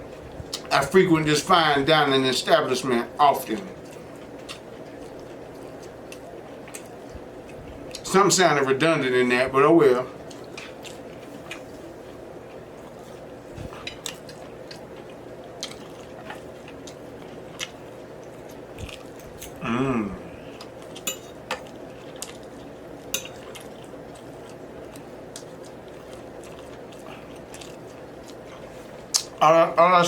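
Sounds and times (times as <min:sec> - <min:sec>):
chewing and biting food: 0:03.4 - 0:08.1, 0:10.2 - 0:19.6, 0:20.4 - 0:29.4
person humming: 0:19.6 - 0:20.5.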